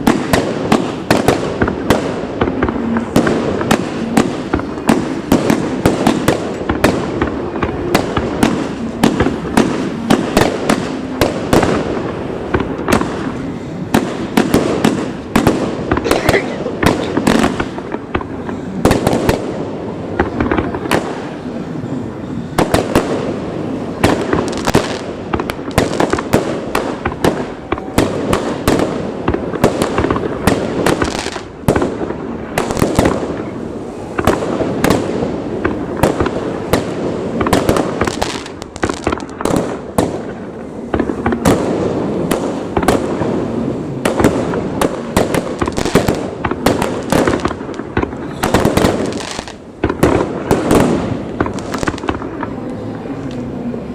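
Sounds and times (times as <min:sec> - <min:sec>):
fireworks bangs and crackling: 0:00.0 - 0:53.9.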